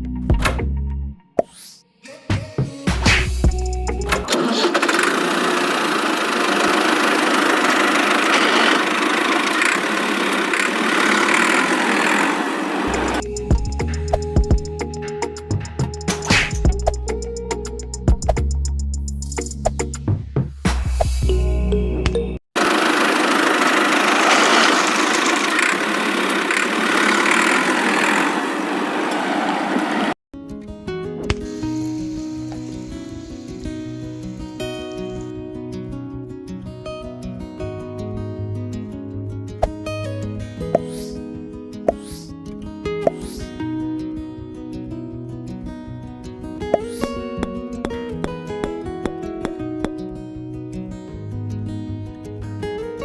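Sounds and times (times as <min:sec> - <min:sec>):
music: 0:00.0 - 0:04.4, 0:13.2 - 0:22.4, 0:30.4 - 0:53.0
rattly motor running: 0:03.9 - 0:13.4, 0:22.6 - 0:28.9.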